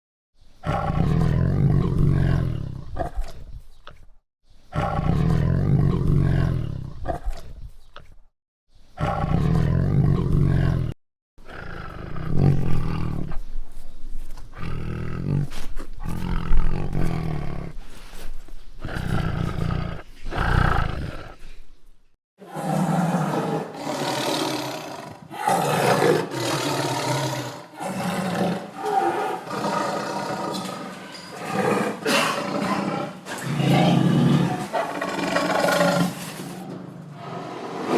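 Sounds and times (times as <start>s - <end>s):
tiger roaring: 0.6s - 3.4s, 4.7s - 7.4s, 9.0s - 13.4s, 14.5s - 17.8s, 18.8s - 21.4s, 22.4s - 37.9s.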